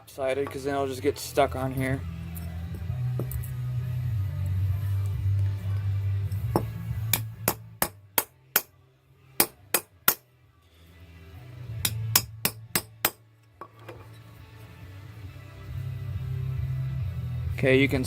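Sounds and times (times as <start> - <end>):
hammer striking metal chisel: 6.3 - 8.8, 9.4 - 10.3, 11.8 - 14.0.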